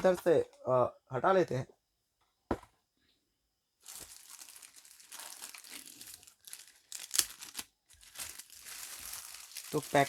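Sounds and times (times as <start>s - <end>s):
plastic wrapping crinkling: 3.8s - 10.0s.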